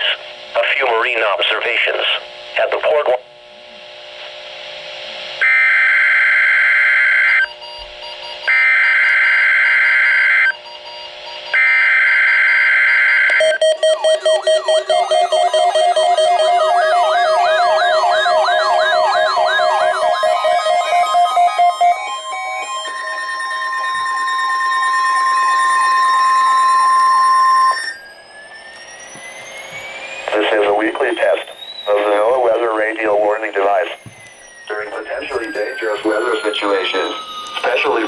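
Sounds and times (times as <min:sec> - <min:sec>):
shrill digital data tones: 0:08.5 - 0:38.0
warbling siren-like alert tone: 0:11.4 - 0:38.0.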